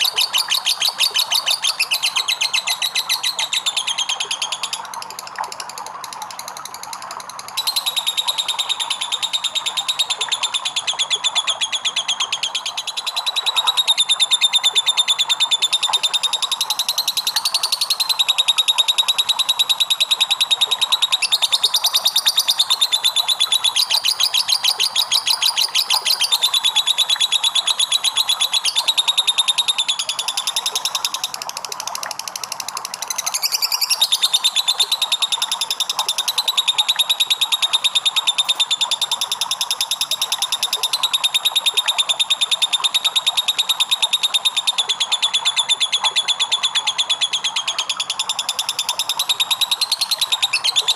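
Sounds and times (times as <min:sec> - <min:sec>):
lovebird chattering trill: 0:00.0 - 0:04.9, 0:07.6 - 0:31.3, 0:33.0 - 0:50.9.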